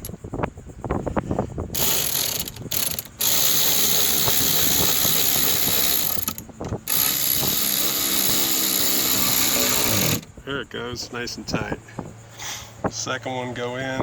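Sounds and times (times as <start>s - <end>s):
power screwdriver driving screw: 1.8s - 10.3s.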